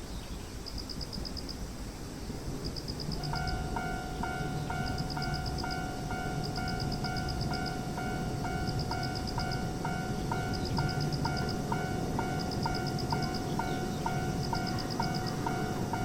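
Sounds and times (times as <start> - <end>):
railroad crossing bell dinging: 2.7 - 16.0.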